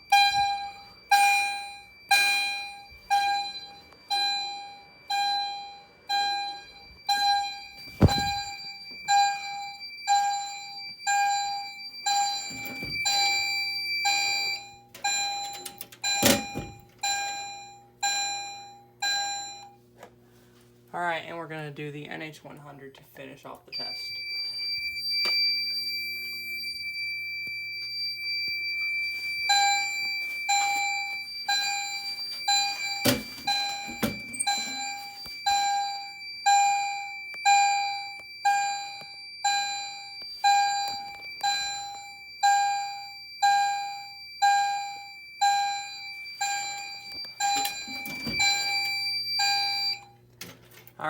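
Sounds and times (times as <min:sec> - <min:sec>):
fire alarm chime: 0:00.0 - 0:20.4, 0:23.7 - 0:50.3
thumps: 0:07.9 - 0:08.6.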